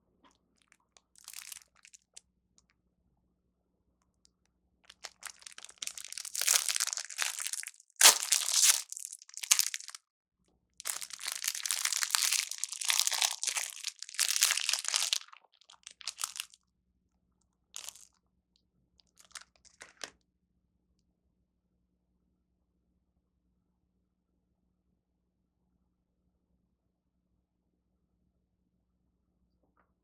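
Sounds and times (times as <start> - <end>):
plastic wrapper crinkling and tearing: 1.0 - 2.2, 4.9 - 10.0, 10.8 - 16.6, 17.8 - 18.1, 19.2 - 20.1.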